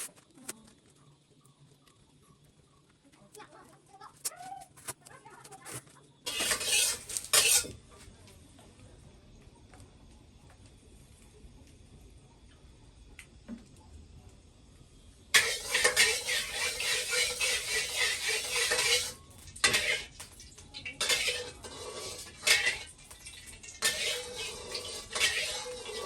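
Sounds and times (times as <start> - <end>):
metal utensil scraping a pan: 6.3 - 7.8, 15.4 - 26.0.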